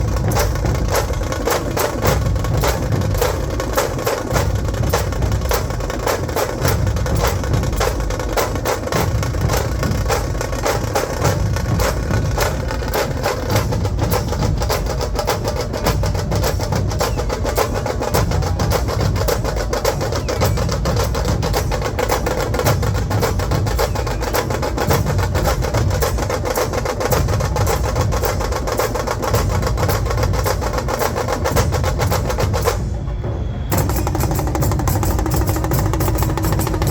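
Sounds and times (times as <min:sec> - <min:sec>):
drum ensemble beating fast rhythm: 0:00.0 - 0:36.9.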